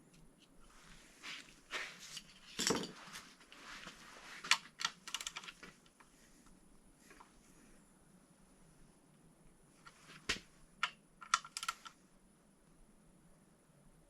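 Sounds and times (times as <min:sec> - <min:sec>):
metal tools clinking: 0:02.0 - 0:03.2
rattle of small clicks: 0:10.8 - 0:12.0.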